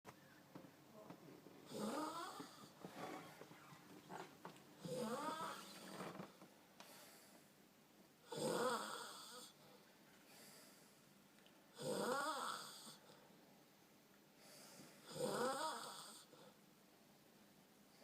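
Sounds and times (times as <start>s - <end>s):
person snoring: 1.7s - 2.7s, 4.8s - 5.9s, 8.3s - 9.6s, 11.8s - 13.1s, 15.0s - 16.3s
quiet breathing: 4.8s - 7.6s, 8.4s - 11.3s, 14.3s - 16.7s.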